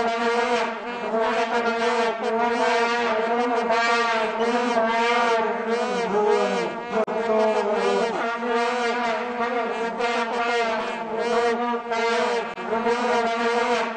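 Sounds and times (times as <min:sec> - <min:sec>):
vuvuzela drone: 0:00.0 - 0:13.9.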